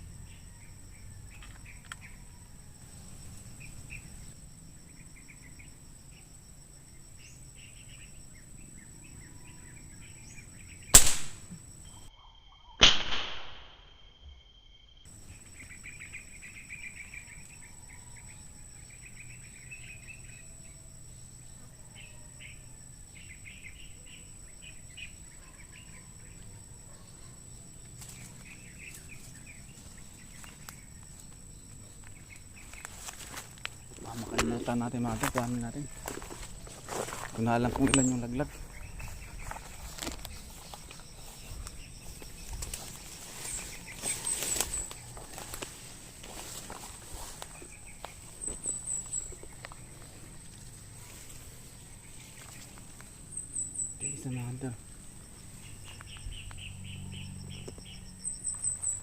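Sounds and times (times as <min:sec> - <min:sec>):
small birds chirping: 0:00.0 - 0:02.5, 0:03.2 - 0:12.8, 0:15.0 - 0:20.9, 0:21.5 - 0:59.0
high insect drone: 0:00.0 - 0:12.8, 0:13.5 - 0:59.0
air rifle crack: 0:10.9 - 0:11.5, 0:12.8 - 0:13.9.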